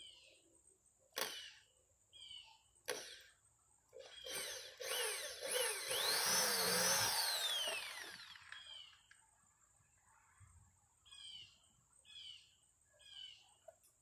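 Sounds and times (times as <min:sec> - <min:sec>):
electric drill boring into wood: 0:04.0 - 0:09.1.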